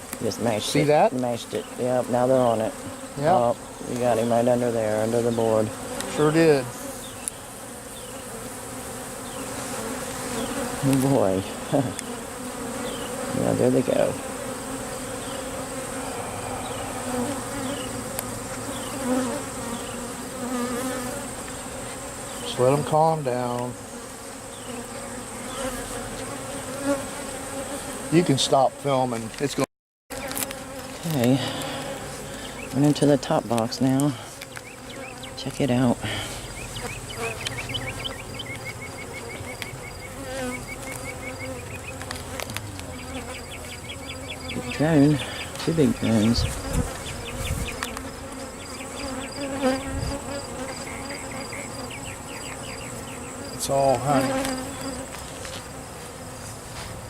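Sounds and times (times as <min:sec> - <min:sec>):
bees buzzing: 0:00.0 - 0:57.0.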